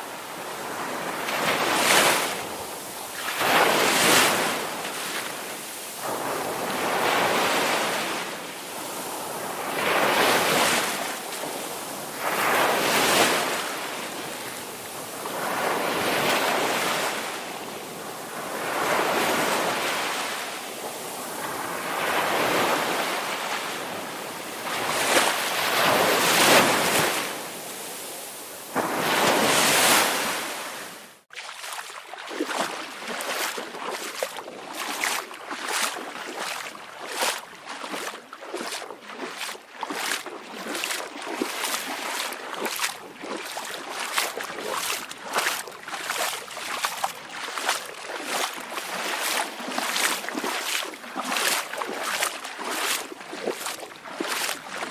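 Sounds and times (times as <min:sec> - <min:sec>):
ocean waves breaking on beach: 0:00.0 - 0:54.9
choppy water splashing: 0:31.2 - 0:54.9.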